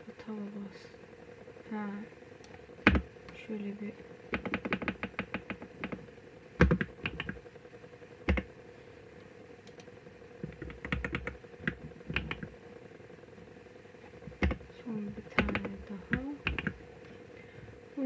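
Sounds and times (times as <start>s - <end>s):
computer keyboard typing: 2.4s - 3.4s, 4.3s - 7.4s, 8.3s - 8.5s, 9.6s - 12.6s, 14.1s - 17.2s.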